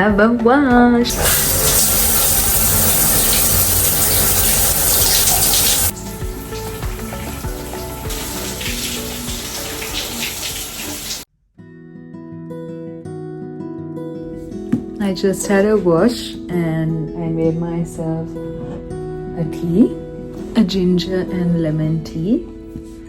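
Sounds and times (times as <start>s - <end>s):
soft background music: 0.0s - 11.2s, 11.8s - 23.0s
water running hard: 1.1s - 11.3s.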